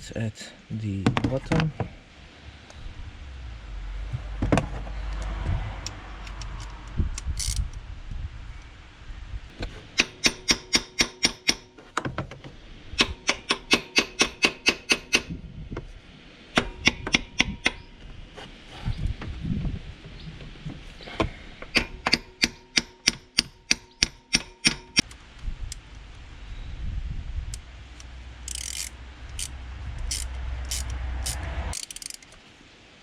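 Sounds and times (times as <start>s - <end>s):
low knocking and handling noise: 4.0s - 6.8s.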